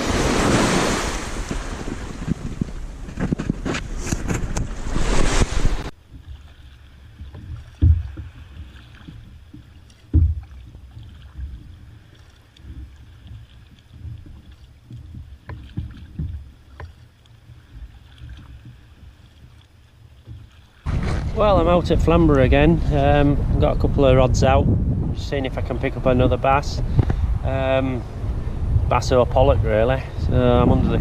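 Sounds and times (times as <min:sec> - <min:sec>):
water slapping against hull: 0:00.0 - 0:24.6
wind and surf noise: 0:00.0 - 0:31.0
faint light knocks and ticks: 0:06.1 - 0:20.7.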